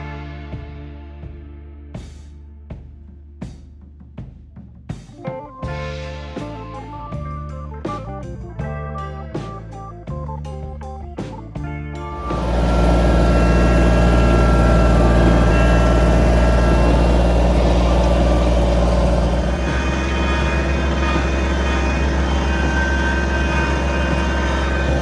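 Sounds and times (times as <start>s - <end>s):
tractor diesel engine running: 12.1s - 25.0s.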